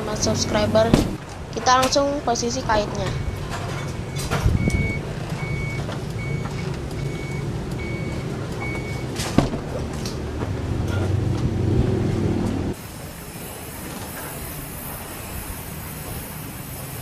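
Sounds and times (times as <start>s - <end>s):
vehicle engine rumbling: 0.0s - 17.0s
short electronic beeps: 0.2s - 0.8s, 2.7s - 9.0s.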